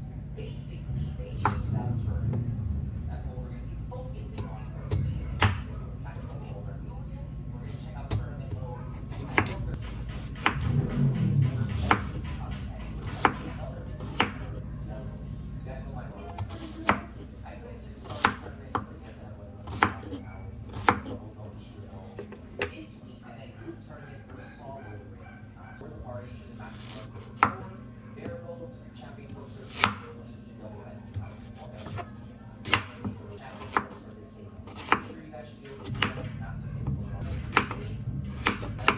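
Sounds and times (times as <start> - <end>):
knife chopping on cutting board: 8.1 - 10.8, 11.6 - 14.6, 16.2 - 17.3, 18.0 - 19.0, 19.6 - 21.2, 29.4 - 30.0, 31.1 - 34.0, 34.6 - 35.1, 35.8 - 38.9.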